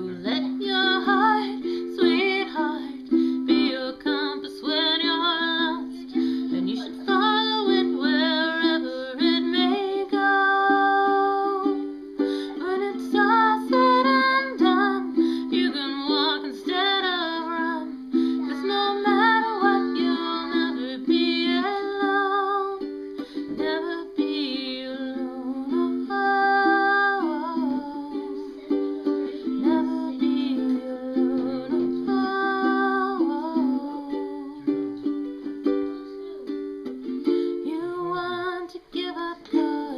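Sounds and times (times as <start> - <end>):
ukulele song: 0.0 - 39.9.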